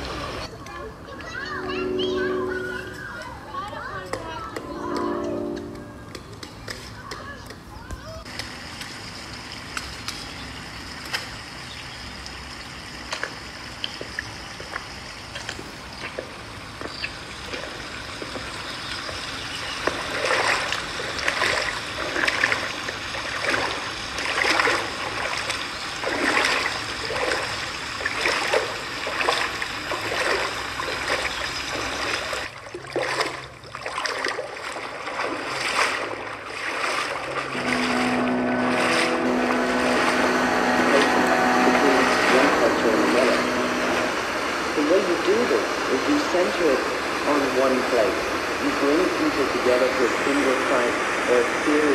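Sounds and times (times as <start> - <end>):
loud water splashes: 8.2 - 51.9
water trickling: 8.6 - 42.3.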